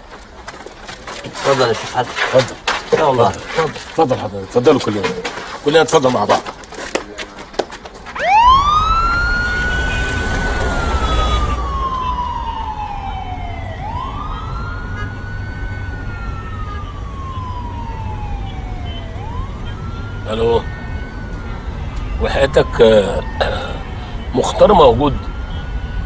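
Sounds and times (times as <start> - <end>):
police siren wailing: 8.1 - 26.0
low engine rumble: 8.5 - 14.0.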